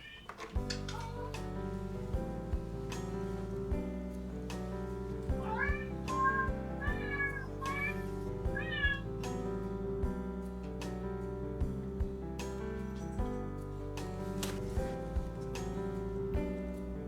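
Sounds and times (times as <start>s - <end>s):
background music with steady beat: 0.6s - 17.0s
cat meowing: 5.4s - 9.1s.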